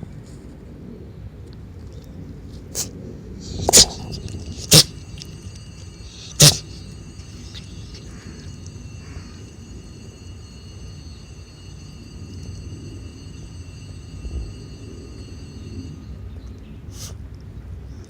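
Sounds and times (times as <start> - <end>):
person sneezing: 2.8 - 5.2, 6.0 - 6.8.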